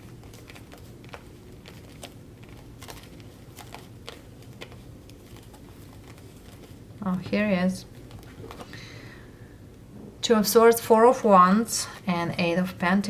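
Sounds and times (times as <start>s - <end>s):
cards being leafed through: 0.0s - 8.9s
low steady room hum: 0.0s - 13.0s.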